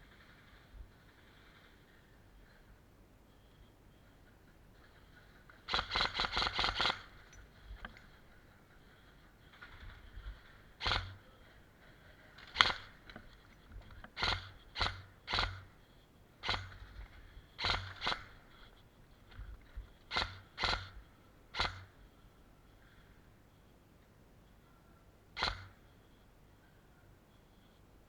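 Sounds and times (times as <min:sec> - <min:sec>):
airsoft gun shots: 0:05.7 - 0:07.3, 0:10.8 - 0:11.2, 0:12.4 - 0:13.2, 0:14.2 - 0:15.7, 0:16.4 - 0:17.0, 0:17.6 - 0:18.5, 0:20.1 - 0:21.0, 0:21.6 - 0:22.0, 0:25.4 - 0:25.8.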